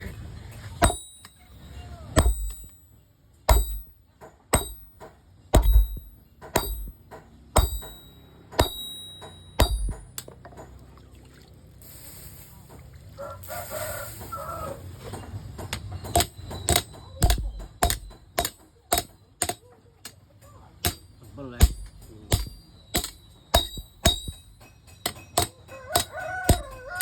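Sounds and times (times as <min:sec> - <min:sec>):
hammer striking metal on anvil: 0:00.8 - 0:10.4, 0:15.7 - 0:20.2, 0:20.8 - 0:27.0.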